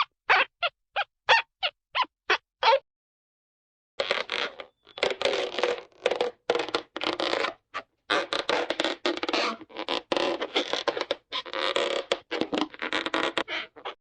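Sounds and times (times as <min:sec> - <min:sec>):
rough scraping creaks: 0:04.0 - 0:14.0.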